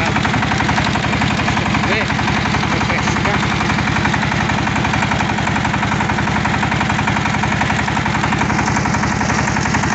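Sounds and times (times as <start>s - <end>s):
diesel engine running: 0.0s - 9.9s.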